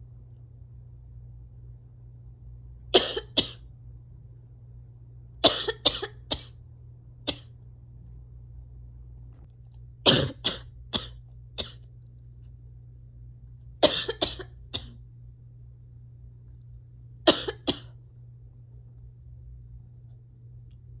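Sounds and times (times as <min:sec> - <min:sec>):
person coughing: 0:03.0 - 0:03.6, 0:05.4 - 0:06.6, 0:07.3 - 0:07.5, 0:10.1 - 0:11.8, 0:13.8 - 0:15.0, 0:17.3 - 0:18.0.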